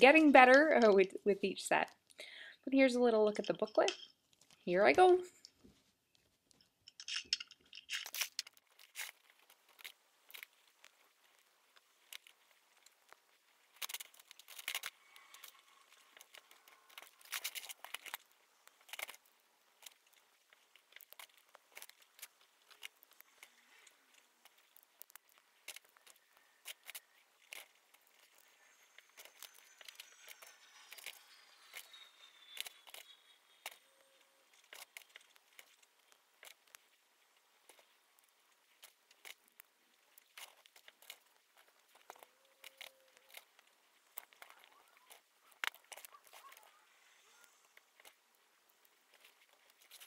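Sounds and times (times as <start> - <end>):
plastic bricks clicking: 6.8 - 9.2
plastic bags crinkling: 6.9 - 50.0.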